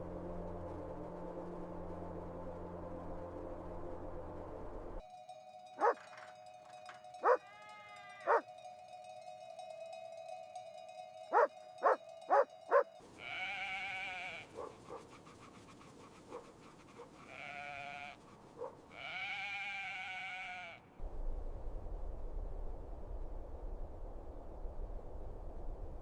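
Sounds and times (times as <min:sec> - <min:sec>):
low rumble: 0:00.0 - 0:05.0, 0:21.0 - 0:26.0
wolves yelping and howling: 0:05.8 - 0:06.2, 0:07.2 - 0:08.5, 0:11.3 - 0:13.0, 0:14.5 - 0:18.9.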